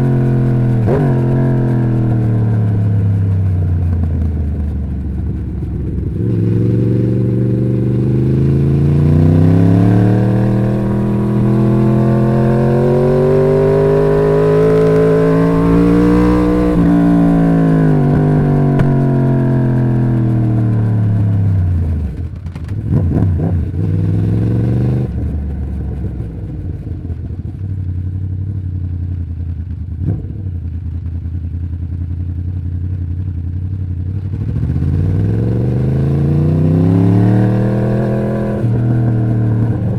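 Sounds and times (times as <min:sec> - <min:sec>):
motorcycle engine revving: 0:00.0 - 0:27.5, 0:29.8 - 0:39.9.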